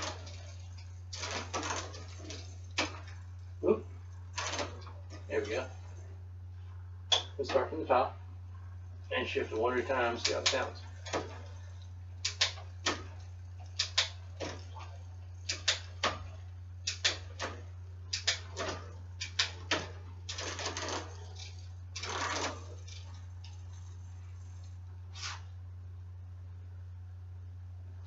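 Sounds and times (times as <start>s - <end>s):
low hum: 0.0s - 28.0s.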